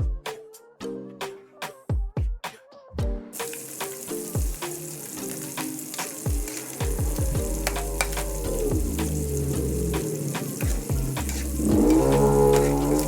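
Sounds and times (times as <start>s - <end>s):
background music with beat: 0.0s - 13.0s
food sizzling in a pan: 3.4s - 13.0s.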